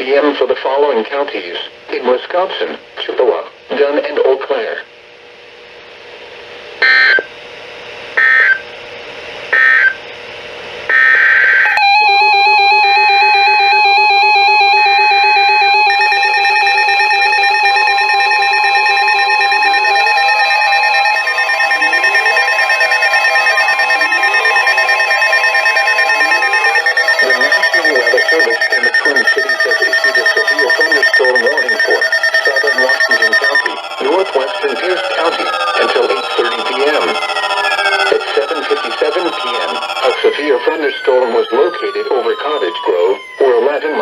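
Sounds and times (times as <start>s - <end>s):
shrill digital chirps: 11.7s - 42.3s
rising electronic sweeps: 11.7s - 43.4s
warbling electronic alert tones: 11.7s - 43.4s.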